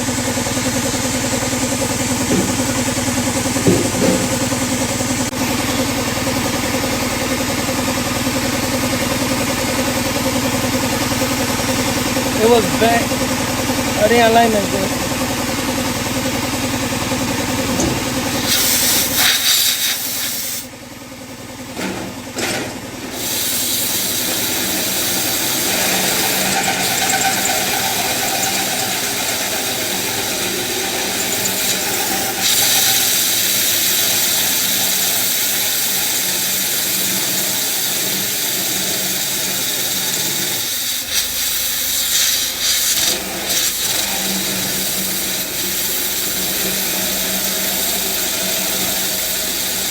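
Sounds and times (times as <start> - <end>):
power drill cutting sheet metal: 18.0 - 20.7, 23.1 - 49.9.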